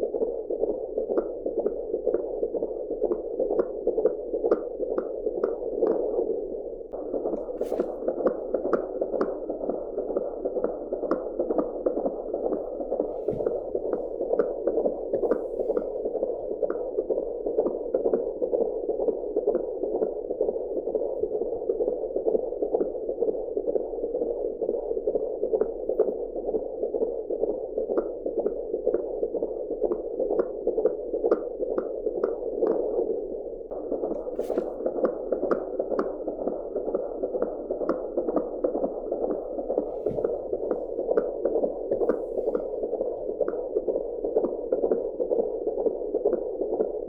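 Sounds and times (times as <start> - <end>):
fast fetal heartbeat: 0.0 - 47.0.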